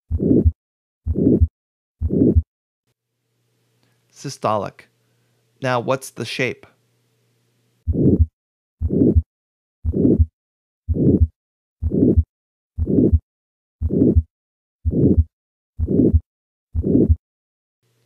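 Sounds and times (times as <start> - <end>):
harsh heart murmur: 0.1 - 2.5, 7.9 - 10.3, 10.9 - 17.2
heart beating: 0.1 - 2.5, 7.9 - 10.3, 10.9 - 17.2.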